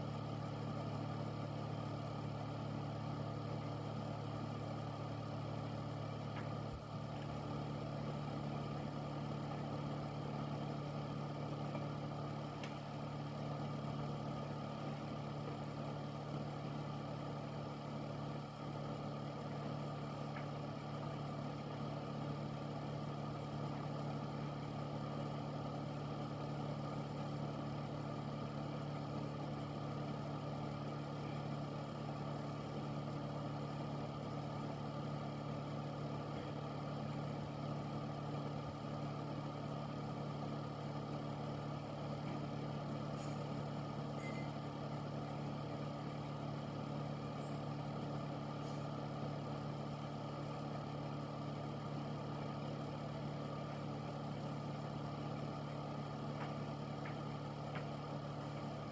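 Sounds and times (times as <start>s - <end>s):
air filter fan running: 23.4s - 58.9s.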